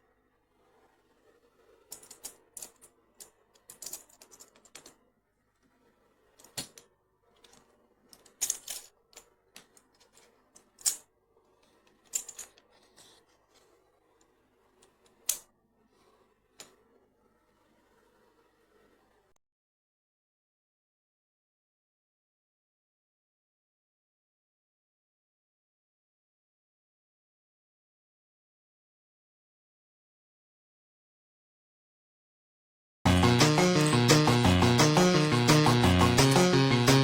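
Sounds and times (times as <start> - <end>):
plastic cubes clicking and clacking: 1.9 - 5.1, 6.4 - 15.4.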